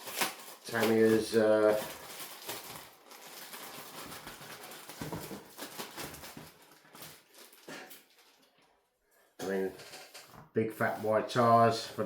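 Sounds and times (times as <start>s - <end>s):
packaging rustling and crinkling: 0.0s - 8.9s.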